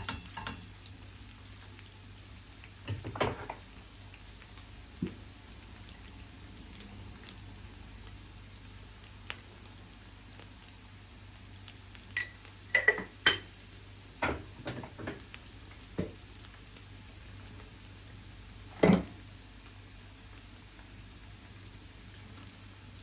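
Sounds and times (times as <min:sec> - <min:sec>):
dishes clinking: 0:00.0 - 0:00.6, 0:12.2 - 0:13.5, 0:18.8 - 0:19.1.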